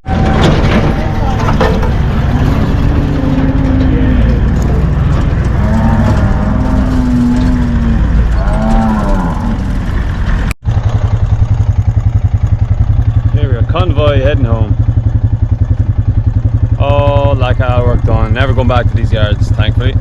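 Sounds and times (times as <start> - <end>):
steady low rumble: 0.0 - 20.0
calves bawling: 0.1 - 10.2
engine with rapid pulsing beat: 0.2 - 20.0
long mooing calls: 2.2 - 10.1.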